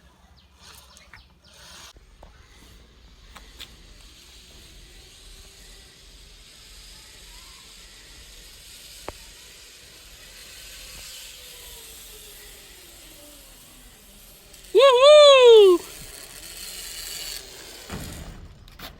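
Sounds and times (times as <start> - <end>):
zipline pulleys hissing on cable: 0.6 - 18.9.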